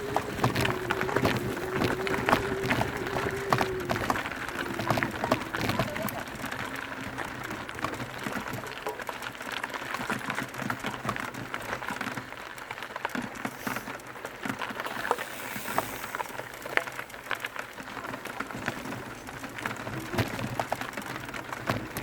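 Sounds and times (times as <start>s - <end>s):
bike tyres rattling over rocks: 0.0s - 22.0s.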